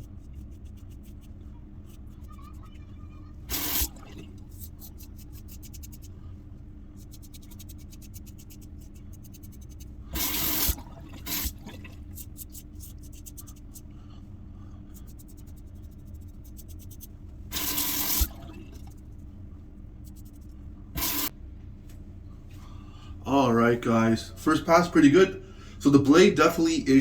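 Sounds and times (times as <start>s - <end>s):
gush of running water: 3.5s - 4.2s, 10.1s - 12.0s, 17.5s - 18.8s, 21.0s - 21.3s
razor scraping stubble: 15.0s - 18.4s, 20.1s - 21.3s.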